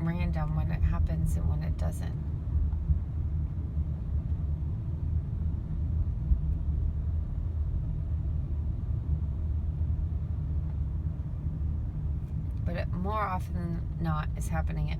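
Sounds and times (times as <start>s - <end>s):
road and engine rumble: 0.0s - 14.9s.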